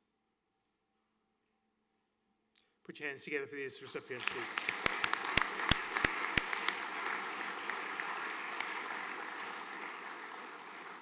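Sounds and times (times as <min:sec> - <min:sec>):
audience applauding: 0:04.0 - 0:11.0
loud single claps: 0:04.2 - 0:11.0.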